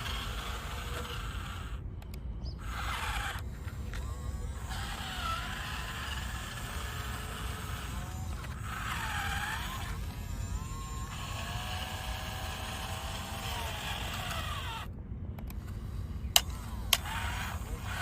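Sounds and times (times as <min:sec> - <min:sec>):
toy excavator motors whirring: 0:00.0 - 0:18.0.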